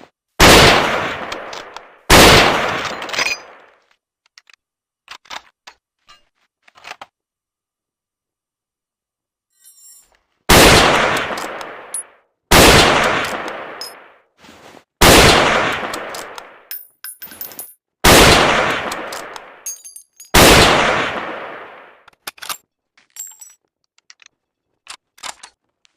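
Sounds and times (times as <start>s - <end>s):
rifle shots echoing: 0.4s - 3.6s, 10.5s - 14.1s, 15.0s - 16.7s, 18.0s - 19.6s, 20.3s - 22.0s.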